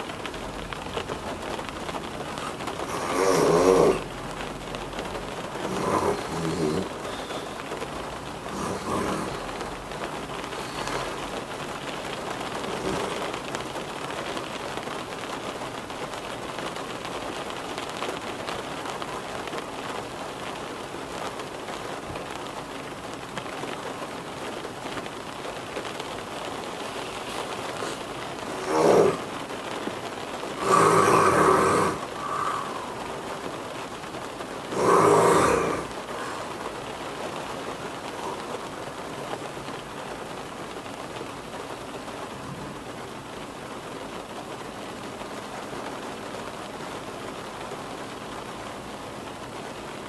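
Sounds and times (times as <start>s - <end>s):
steady rain: 0.0s - 50.0s
man snoring: 2.4s - 4.1s, 5.6s - 7.8s, 8.4s - 11.4s, 12.6s - 13.5s, 27.8s - 29.4s, 30.5s - 33.1s, 34.7s - 36.6s.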